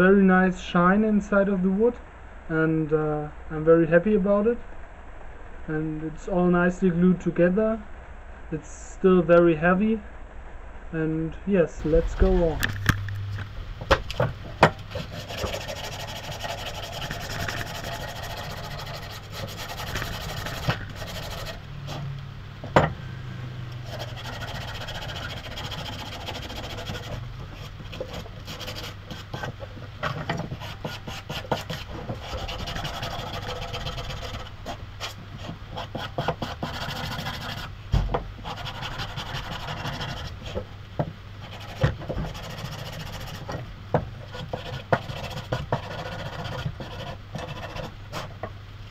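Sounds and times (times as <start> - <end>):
rasp scraping wood: 13.9 - 22.1, 23.8 - 37.7, 38.4 - 40.7, 41.4 - 48.5.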